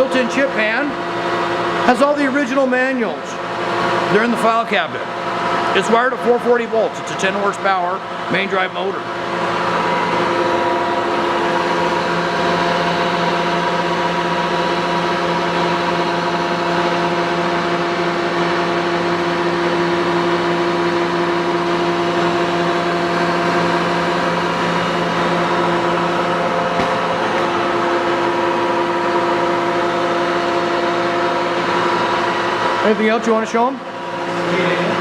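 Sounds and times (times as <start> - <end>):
lathe running with whine: 0.0 - 35.0.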